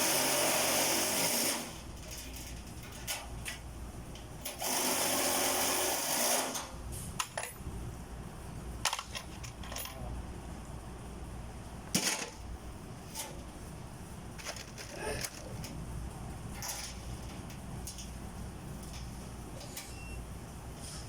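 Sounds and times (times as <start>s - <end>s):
power tool running: 0.0s - 1.7s.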